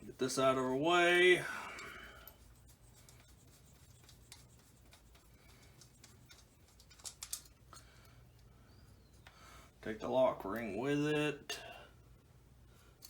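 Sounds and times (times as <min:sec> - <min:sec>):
small metal parts clicking: 0:04.0 - 0:08.5.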